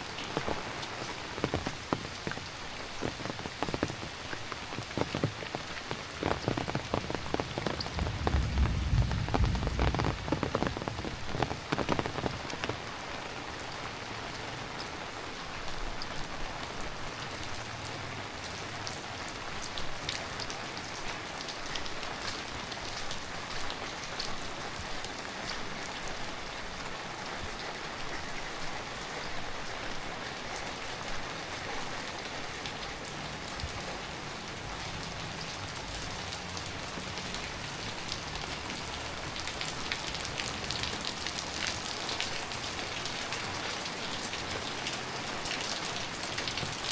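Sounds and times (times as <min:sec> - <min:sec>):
heavy rain falling: 0:00.0 - 0:46.9
low rumble: 0:07.9 - 0:11.4.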